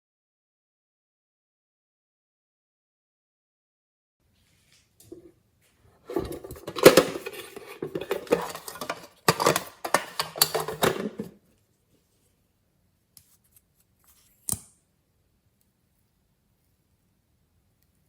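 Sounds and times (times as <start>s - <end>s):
hard objects clinking in container: 6.1s - 11.3s.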